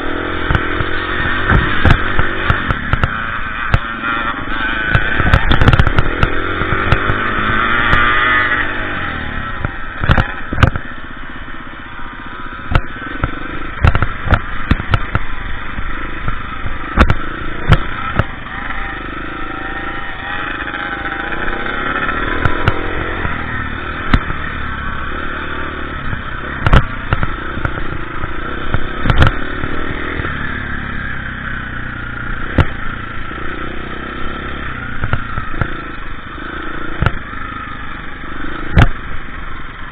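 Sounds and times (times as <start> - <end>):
dirt bike engine revving: 0.0 - 39.9
sharp knocks and clatters: 0.4 - 3.9, 4.8 - 8.7, 9.6 - 10.9, 12.7 - 15.4, 25.5 - 30.4.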